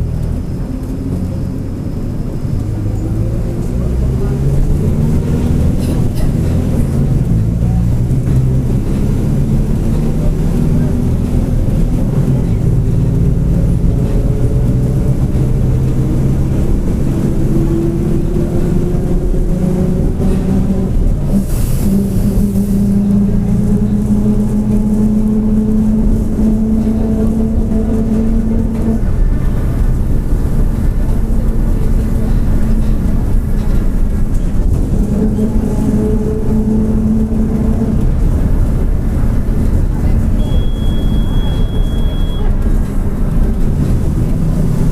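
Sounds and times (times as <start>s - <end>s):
bus diesel engine running: 0.0s - 44.9s.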